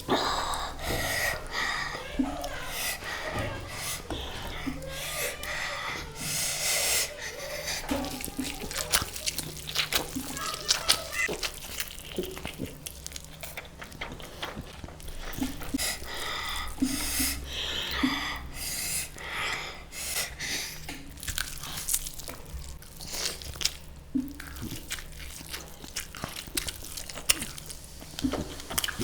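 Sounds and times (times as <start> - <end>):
person crunching and chewing: 7.3 - 18.6, 20.7 - 29.0.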